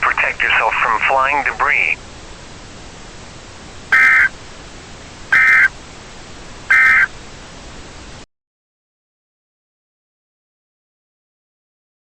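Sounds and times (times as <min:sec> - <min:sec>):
low steady hiss: 0:00.0 - 0:08.2
digital data tone bursts: 0:04.0 - 0:04.3, 0:05.4 - 0:05.7, 0:06.7 - 0:07.1.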